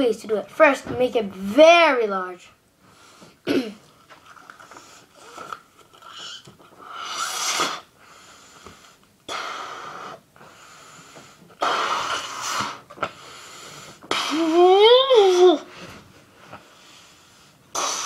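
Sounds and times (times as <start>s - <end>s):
child blowing up a balloon: 4.7s - 16.0s, 17.7s - 18.0s.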